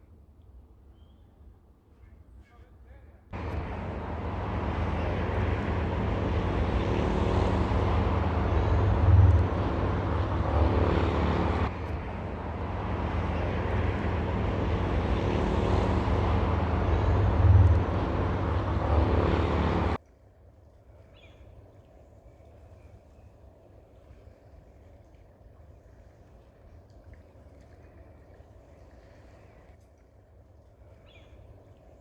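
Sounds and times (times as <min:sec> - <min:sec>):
engine drone with whine: 0:03.4 - 0:20.0.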